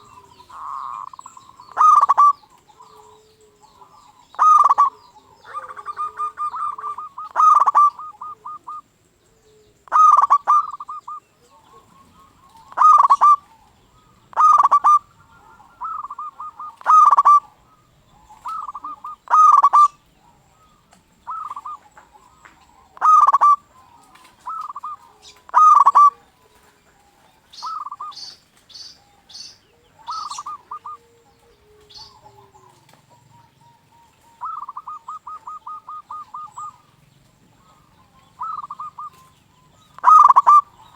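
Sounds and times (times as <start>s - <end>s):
dove cooing: 0.0s - 40.9s.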